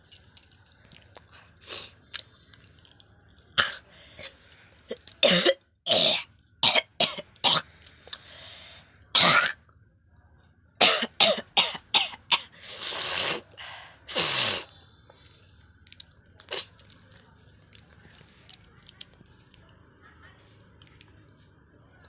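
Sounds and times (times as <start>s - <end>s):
raspy throat-clearing: 3.6s - 4.3s
person coughing: 5.2s - 7.6s, 10.8s - 12.6s.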